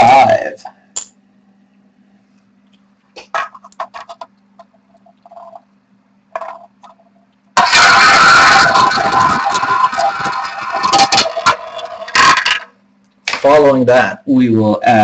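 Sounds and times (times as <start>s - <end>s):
low steady hum: 0.0s - 15.0s
roulette ball rolling rattle: 3.2s - 5.7s, 6.3s - 12.8s.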